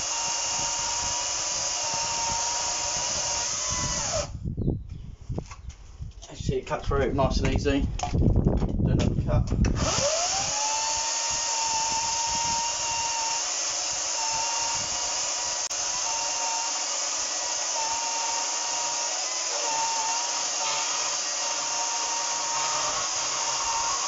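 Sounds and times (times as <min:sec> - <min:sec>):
battery chainsaw motor whine: 0:00.0 - 0:04.4, 0:09.7 - 0:24.0
chain sawing through log: 0:09.8 - 0:24.0.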